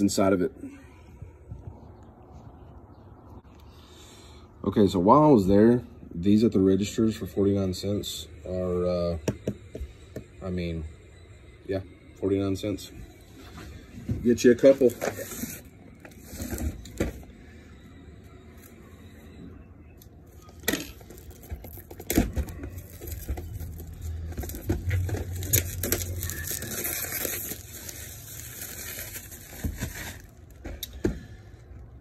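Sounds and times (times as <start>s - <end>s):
packaging tearing and crinkling: 20.9s - 30.6s.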